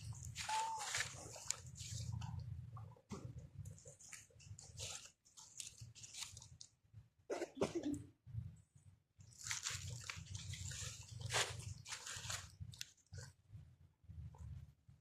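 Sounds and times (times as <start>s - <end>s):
crunching and chewing: 3.6s - 6.8s, 9.2s - 13.4s.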